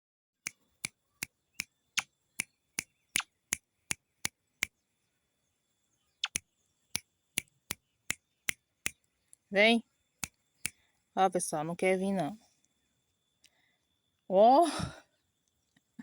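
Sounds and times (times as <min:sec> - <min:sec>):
sharp clicks: 0:06.2 - 0:09.1.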